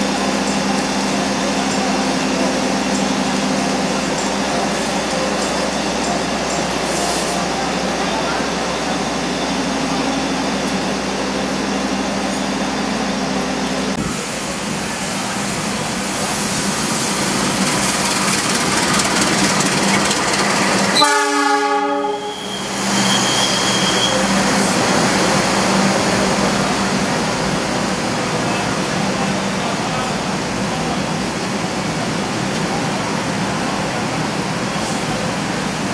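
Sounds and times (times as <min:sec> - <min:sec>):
train rumble and hiss: 0:00.0 - 0:35.9
train horn blast: 0:20.9 - 0:24.3.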